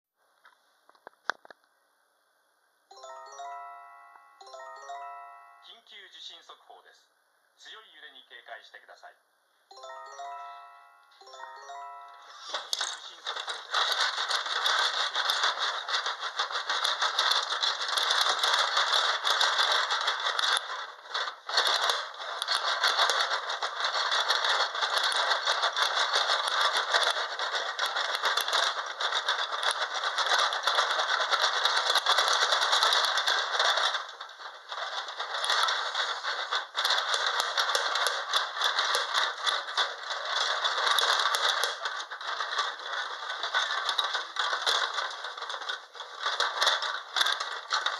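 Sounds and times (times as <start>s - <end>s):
plastic dollhouse rattling: 2.9s - 5.7s, 9.7s - 47.9s.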